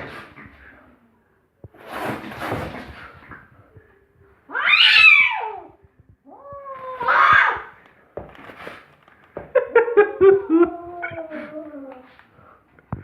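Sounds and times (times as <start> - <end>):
cat meowing: 4.5 - 5.7.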